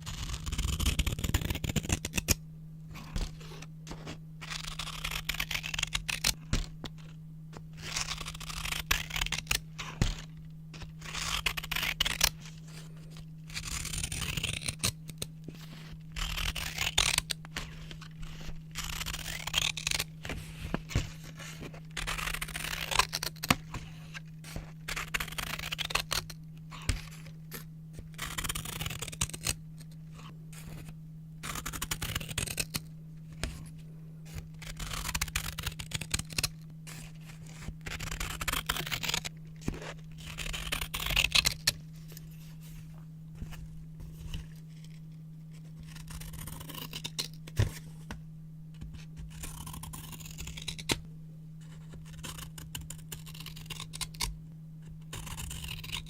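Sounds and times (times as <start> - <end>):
scissors cutting paper: 0.1 - 33.7, 34.3 - 42.8, 43.4 - 48.2, 48.8 - 51.0, 51.6 - 54.3, 55.0 - 56.0.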